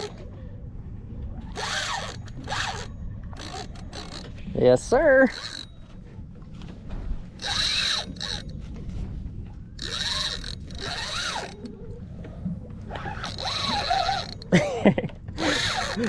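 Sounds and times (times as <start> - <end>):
low rumble: 0.0 - 16.0
fishing reel drag buzzing: 1.5 - 4.4, 5.2 - 5.8, 7.4 - 8.6, 9.8 - 11.7, 12.9 - 14.5, 15.4 - 16.0.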